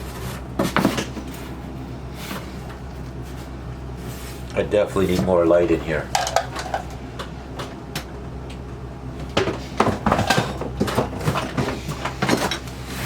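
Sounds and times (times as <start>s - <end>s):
sewing machine parts rummaged in box: 9.8s - 13.0s.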